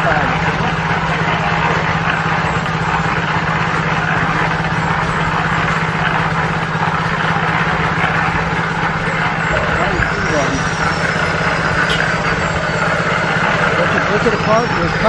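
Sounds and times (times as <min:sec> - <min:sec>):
engine hum: 0:00.0 - 0:15.0.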